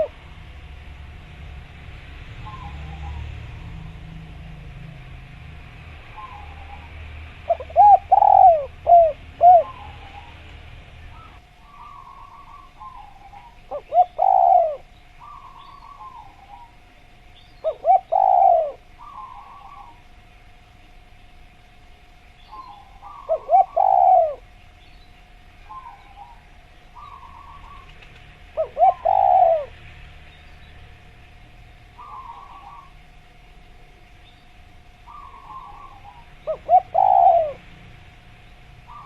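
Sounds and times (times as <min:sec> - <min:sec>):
doves cooing: 0:00.0 - 0:00.5, 0:06.1 - 0:20.2, 0:22.5 - 0:24.6, 0:25.6 - 0:30.0, 0:31.9 - 0:34.1, 0:35.0 - 0:37.8, 0:38.6 - 0:39.0
faint steady tone: 0:00.0 - 0:39.0.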